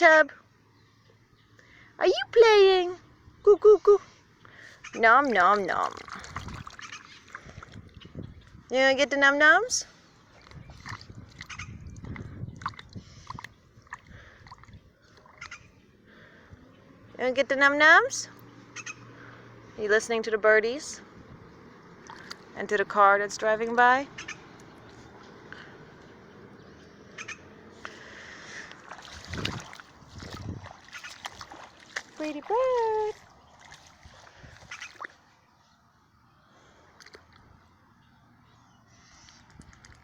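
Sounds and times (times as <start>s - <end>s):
goose slurping water: 4.6s - 8.7s, 9.7s - 15.8s, 21.9s - 22.6s, 27.2s - 35.4s, 38.9s - 40.0s.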